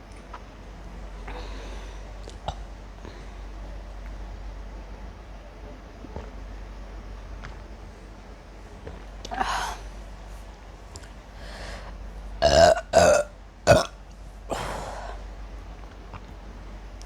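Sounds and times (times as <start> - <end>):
woman burping: 12.4 - 13.9.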